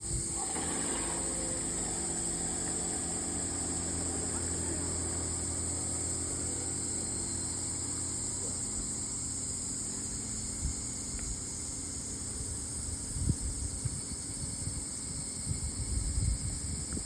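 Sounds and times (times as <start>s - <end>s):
low engine hum: 0.0s - 12.4s
insects droning: 0.0s - 17.0s.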